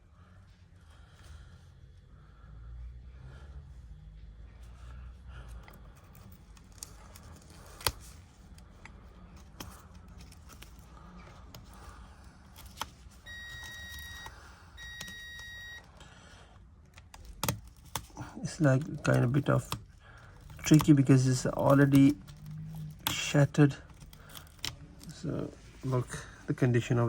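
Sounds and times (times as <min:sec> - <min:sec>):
electronic beeps: 0:13.2 - 0:15.8.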